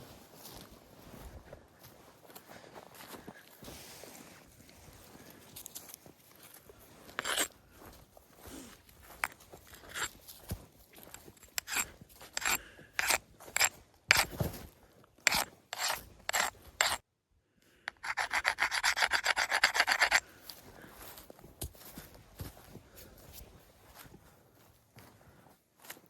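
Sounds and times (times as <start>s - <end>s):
footsteps crunching on stony trail: 0.0s - 17.0s, 20.1s - 26.0s
fast rasping scrape: 7.2s - 7.5s, 11.4s - 14.3s, 15.2s - 17.0s, 17.9s - 20.2s.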